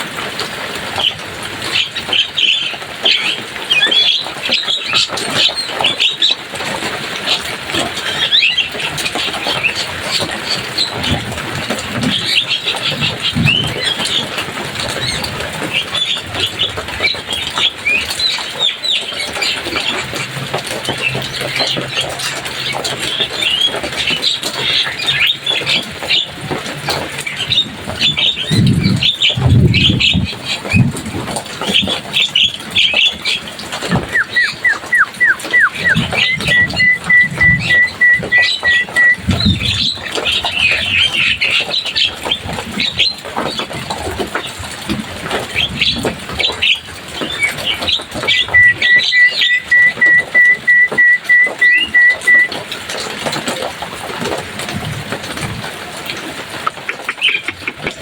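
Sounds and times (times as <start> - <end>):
myna chattering and whistling: 33.8 - 40.0, 48.2 - 52.6, 56.7 - 58.0.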